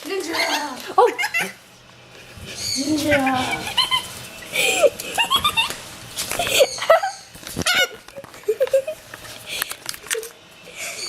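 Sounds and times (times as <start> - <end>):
lorikeet shrill screeches: 2.6 - 3.0
lorikeet chattering: 2.6 - 4.0.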